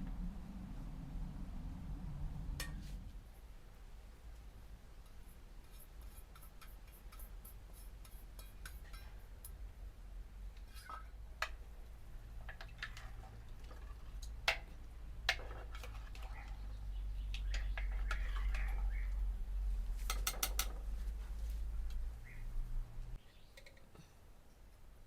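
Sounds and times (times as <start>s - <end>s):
low rumble: 0.0s - 3.3s.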